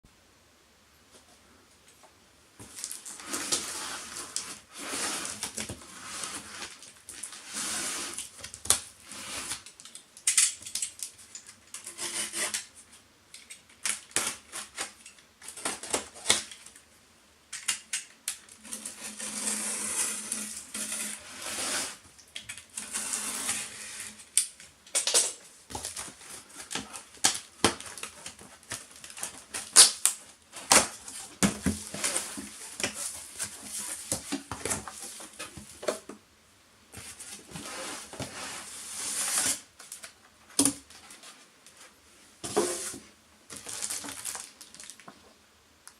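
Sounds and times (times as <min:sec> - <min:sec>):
packaging rustling: 0:42.6 - 0:45.2.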